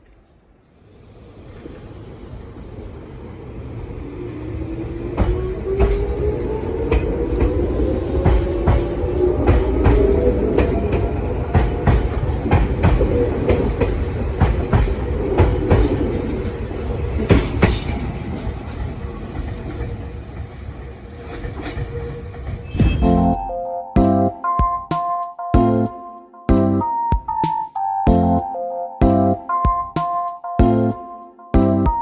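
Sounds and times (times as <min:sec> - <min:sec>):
train motor whine: 0:04.6 - 0:11.7
train wheels clacking over rail joints: 0:05.0 - 0:22.8
piano music: 0:22.8 - 0:32.0.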